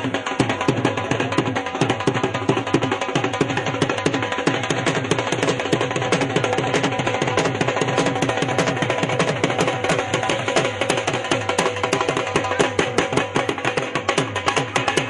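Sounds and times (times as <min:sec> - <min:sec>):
music with fast dense drumming: 0:00.0 - 0:15.0.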